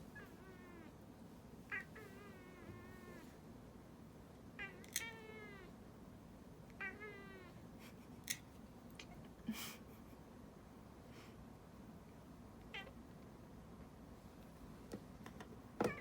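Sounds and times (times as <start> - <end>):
cat meowing: 4.6 - 5.7, 6.8 - 7.6.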